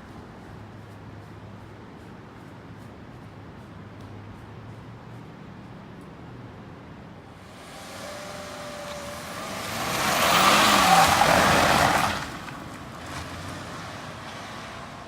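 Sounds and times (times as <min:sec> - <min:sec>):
vehicle passing by: 0:07.3 - 0:15.0.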